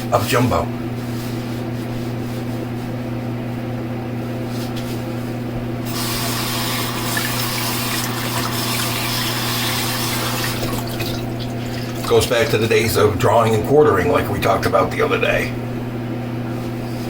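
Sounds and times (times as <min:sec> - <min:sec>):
tap water running into sink: 0:05.9 - 0:12.3.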